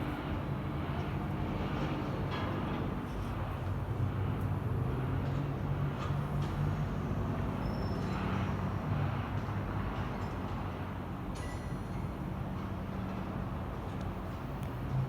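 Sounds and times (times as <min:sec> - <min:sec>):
diesel locomotive engine hum: 0:00.0 - 0:11.3.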